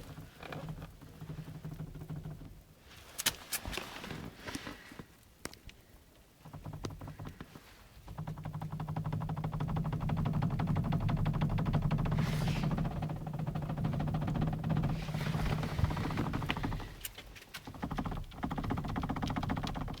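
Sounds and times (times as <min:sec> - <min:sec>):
van engine clattering: 0:08.0 - 0:20.0.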